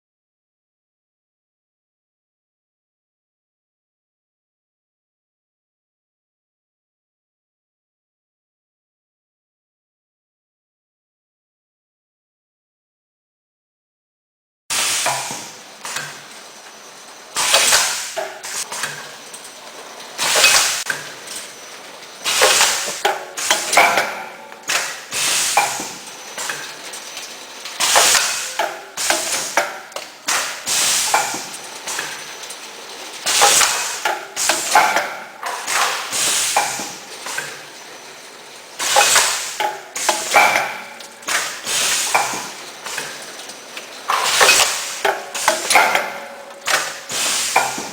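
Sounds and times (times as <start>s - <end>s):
machine sharp clacks: 14.7s - 47.9s
packaging machine clatter: 15.0s - 47.9s.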